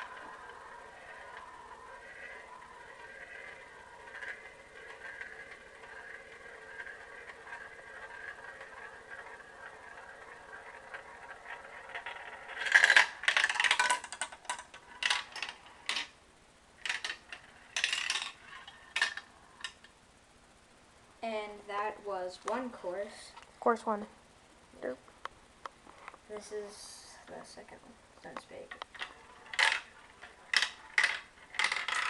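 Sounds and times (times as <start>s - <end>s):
marble clattering knocks: 0.0s - 16.2s, 16.8s - 19.9s, 28.8s - 32.0s
marble rolling along track: 0.0s - 16.2s, 16.8s - 20.0s, 25.9s - 32.0s.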